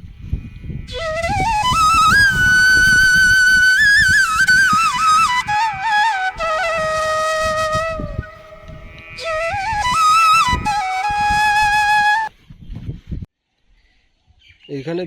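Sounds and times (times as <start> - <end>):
solo flute melody: 0.9 - 12.3.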